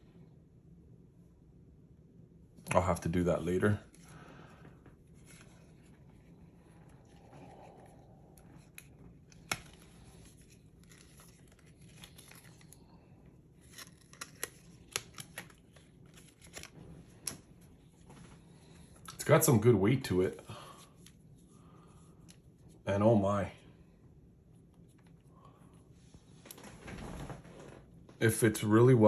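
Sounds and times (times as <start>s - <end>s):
packaging rustling: 8.4s - 17.4s.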